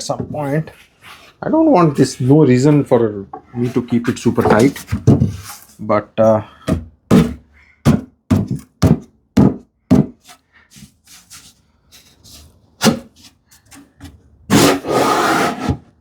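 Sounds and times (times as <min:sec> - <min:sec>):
sanding strokes on plywood: 0:14.5 - 0:15.8.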